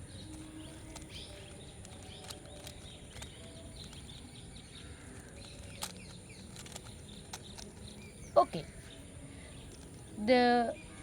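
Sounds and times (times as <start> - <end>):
faint birds chirping: 0.0 - 11.0
puzzle cube clicking: 5.2 - 7.9.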